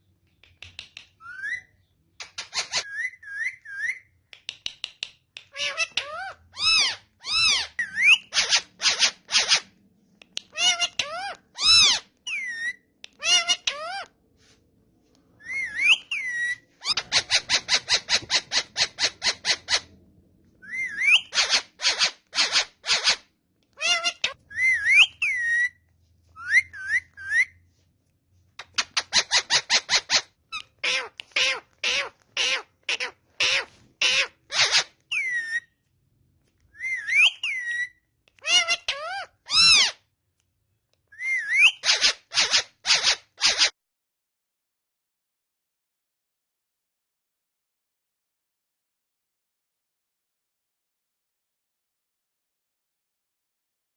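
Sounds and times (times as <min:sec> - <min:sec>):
parrots chattering: 0:02.2 - 0:04.0, 0:05.4 - 0:09.7, 0:10.4 - 0:14.1, 0:15.4 - 0:20.0, 0:20.6 - 0:23.2, 0:23.8 - 0:25.7, 0:28.6 - 0:35.6, 0:36.8 - 0:40.0, 0:41.2 - 0:43.7
parrot whistles: 0:15.4 - 0:19.9, 0:20.6 - 0:22.6, 0:36.8 - 0:38.7, 0:41.1 - 0:43.2.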